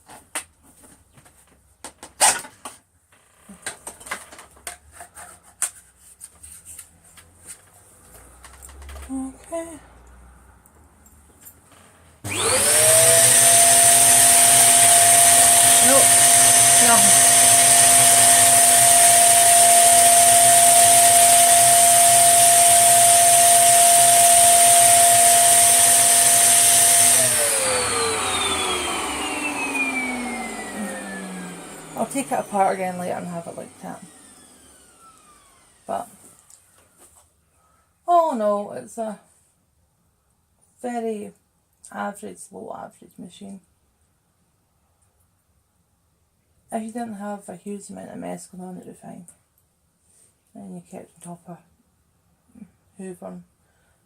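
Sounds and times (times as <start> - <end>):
vacuum cleaner motor whine: 12.2 - 36.1
vacuum motor spinning down: 12.3 - 36.0.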